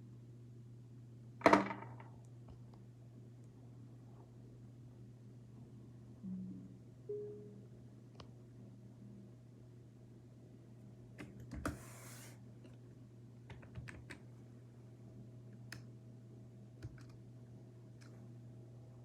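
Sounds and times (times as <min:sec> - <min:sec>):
steady low hum: 0:02.2 - 0:13.5
faint computer keyboard clicks: 0:13.5 - 0:14.2, 0:16.8 - 0:17.2.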